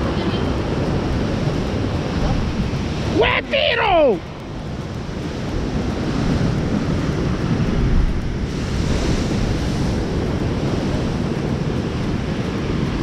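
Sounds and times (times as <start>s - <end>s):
surf washing against rocks: 0.0s - 13.0s
wind buffeting microphone: 0.0s - 13.0s.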